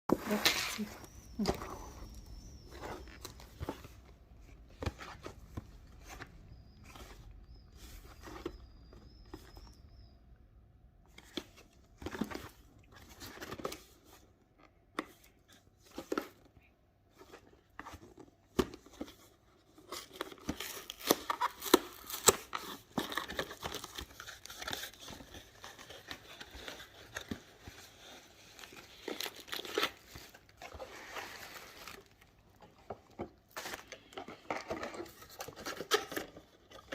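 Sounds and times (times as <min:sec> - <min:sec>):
plastic wrapper crinkling and tearing: 0:19.7 - 0:32.7.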